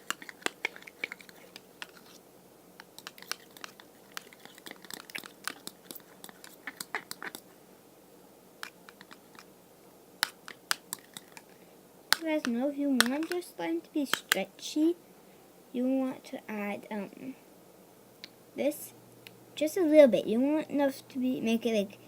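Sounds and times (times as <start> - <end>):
slime squelching: 0.0 - 2.2, 2.8 - 7.5, 8.6 - 9.5, 10.2 - 14.5.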